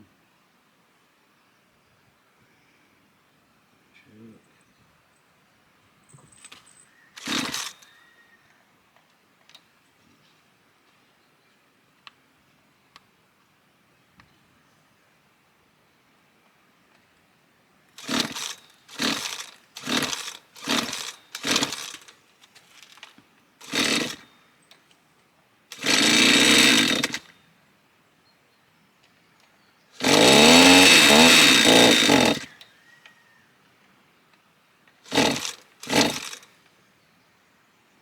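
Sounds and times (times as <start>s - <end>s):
strimmer engine running: 7.2s - 7.8s, 18.0s - 22.1s, 23.6s - 24.2s, 25.7s - 27.3s, 30.0s - 32.5s, 35.1s - 36.4s
strimmer pull-start coughs: 18.0s - 22.0s, 25.8s - 27.2s, 30.0s - 32.5s, 35.1s - 36.4s.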